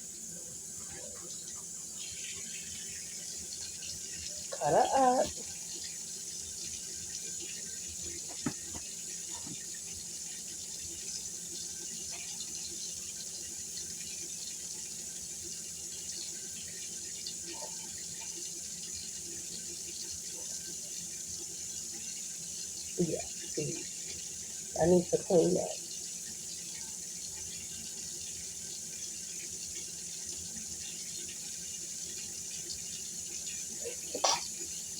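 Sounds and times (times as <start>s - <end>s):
tap running into sink: 8.2s - 9.7s.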